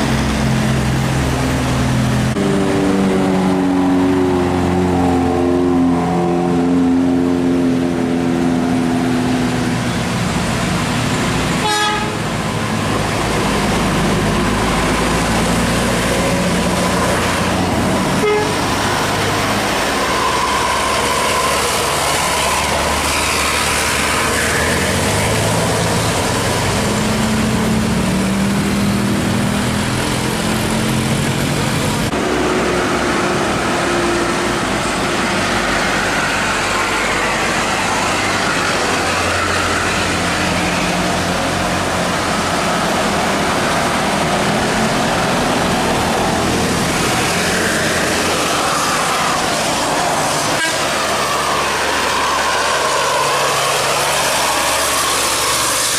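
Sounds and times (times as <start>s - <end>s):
engine and traffic noise: 0.0s - 55.9s
multi-note musical bus horns: 11.5s - 12.5s, 18.0s - 19.2s, 50.2s - 52.3s.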